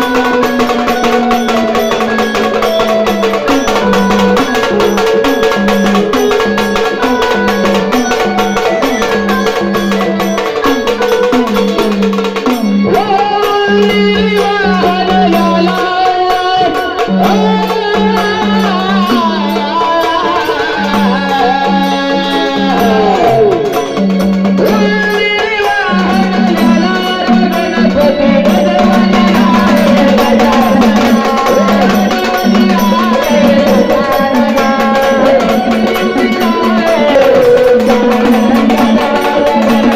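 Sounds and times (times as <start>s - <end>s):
hand drums: 0.0s - 39.9s.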